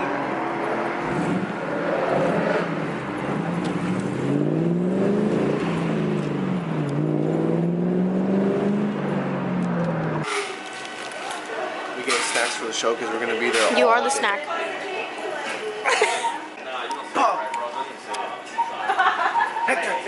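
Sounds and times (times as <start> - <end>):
car engine revving: 0.0 - 11.0.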